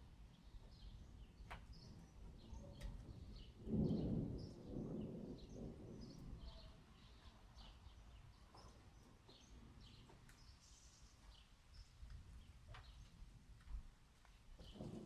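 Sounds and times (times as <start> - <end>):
distant thunder rumble: 2.8 - 7.2, 14.6 - 15.0.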